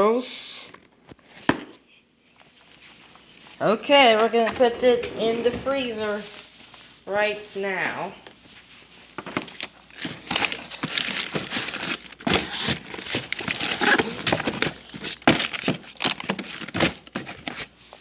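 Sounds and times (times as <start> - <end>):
plastic packaging crinkling: 10.0 - 17.3.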